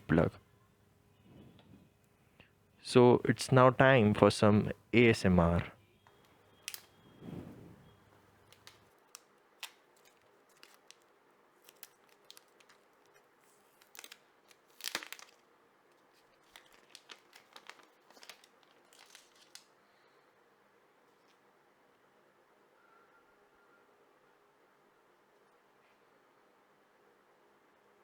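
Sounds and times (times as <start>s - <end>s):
plastic packaging crinkling: 6.1s - 7.2s, 7.9s - 19.8s.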